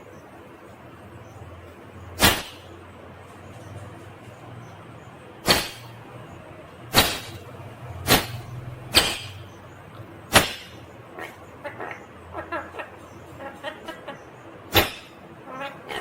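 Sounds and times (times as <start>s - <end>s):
parakeet chattering: 7.0s - 16.0s
parakeet screeching: 10.7s - 16.0s.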